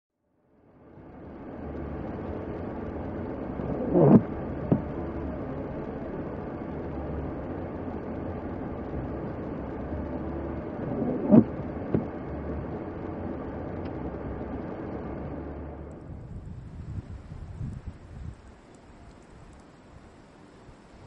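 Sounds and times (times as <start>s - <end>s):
street noise rumble: 0.7s - 21.0s.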